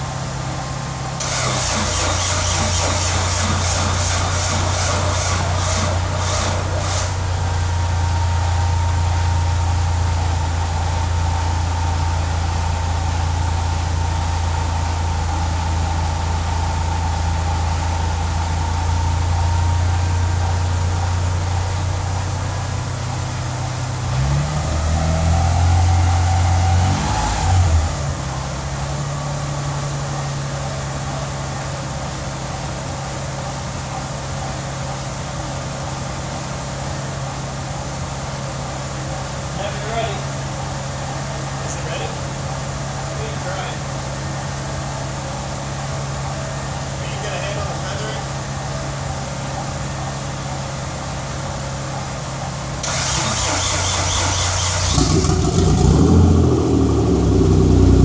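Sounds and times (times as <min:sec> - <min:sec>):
car engine idling: 0:00.0 - 0:58.0
engine revving blips: 0:52.8 - 0:58.0.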